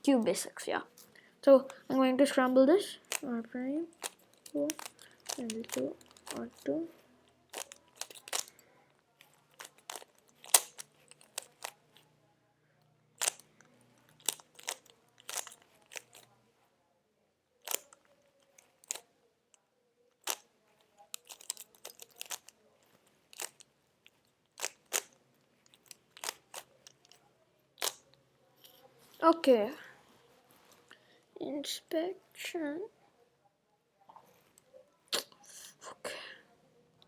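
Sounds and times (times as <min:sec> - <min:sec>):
puzzle cube plastic clicks: 0:02.9 - 0:12.1, 0:13.2 - 0:16.3, 0:17.6 - 0:19.1, 0:20.2 - 0:20.5, 0:21.1 - 0:27.2, 0:27.8 - 0:28.0.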